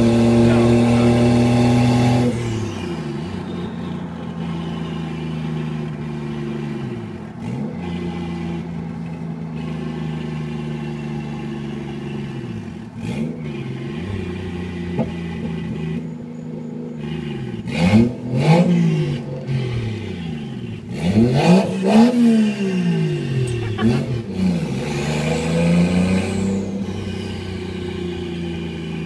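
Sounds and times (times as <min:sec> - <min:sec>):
turbocharged car engine running: 0:00.0 - 0:29.0.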